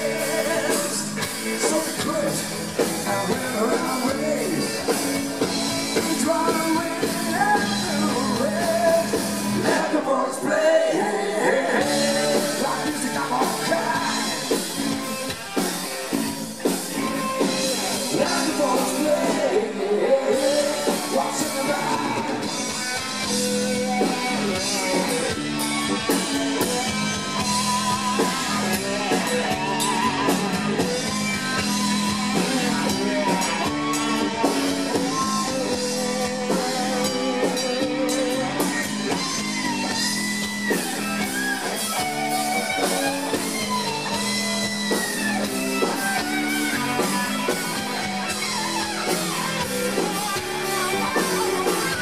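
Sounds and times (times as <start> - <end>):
drum kit: 0.0 - 10.1, 11.7 - 52.0
bass: 0.0 - 52.0
electric guitar lead: 0.0 - 52.0.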